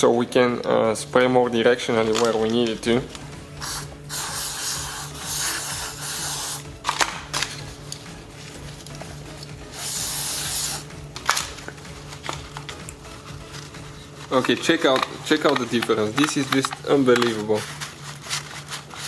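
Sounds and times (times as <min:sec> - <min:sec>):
aerosol spray hissing: 0:03.6 - 0:06.8, 0:09.6 - 0:11.0.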